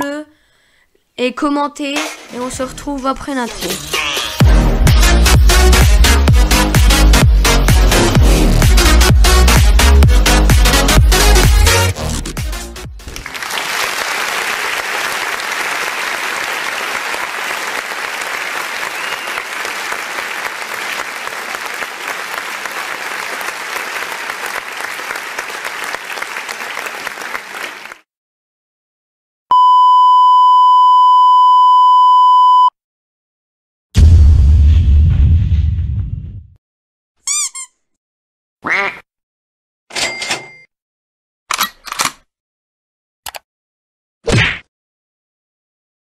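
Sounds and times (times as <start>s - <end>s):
applause: 13.0s - 28.1s
censor bleep tone: 29.5s - 32.8s.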